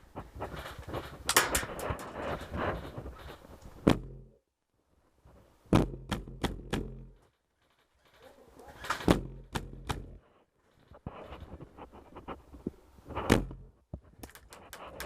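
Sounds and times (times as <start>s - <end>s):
rustling: 0.0s - 3.9s, 7.2s - 9.1s, 10.2s - 15.0s.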